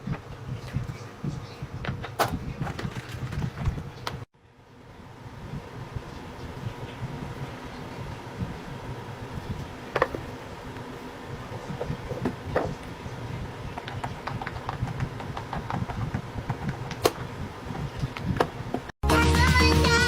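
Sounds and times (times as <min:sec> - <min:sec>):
low background hum: 0:00.0 - 0:19.0
loud music: 0:19.0 - 0:20.0.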